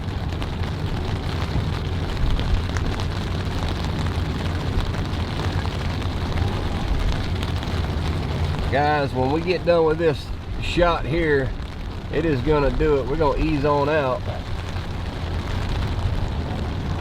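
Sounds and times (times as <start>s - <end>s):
boat engine running: 0.0s - 10.5s.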